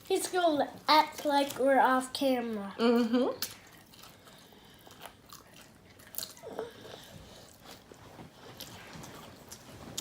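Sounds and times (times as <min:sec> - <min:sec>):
person chewing crisp food: 0:03.4 - 0:10.0.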